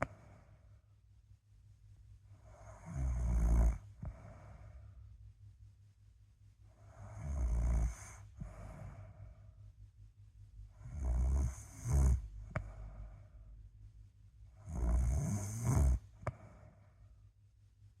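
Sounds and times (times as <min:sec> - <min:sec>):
person snoring: 0:02.4 - 0:04.8, 0:06.8 - 0:09.2, 0:10.8 - 0:13.0, 0:14.6 - 0:16.6.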